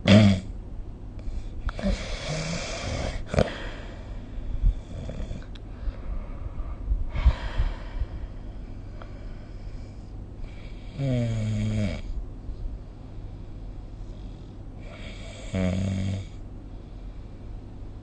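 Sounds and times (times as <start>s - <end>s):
person snoring: 1.7s - 4.1s, 9.0s - 12.2s, 14.8s - 16.4s.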